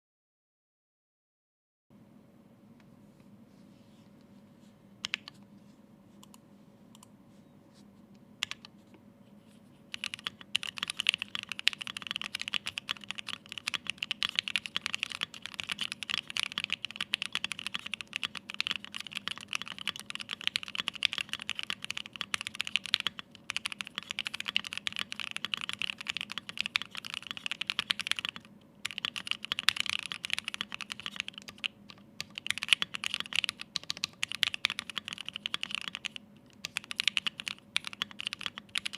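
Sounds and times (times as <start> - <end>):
mechanical keyboard typing: 8.4 - 8.7, 9.9 - 38.9.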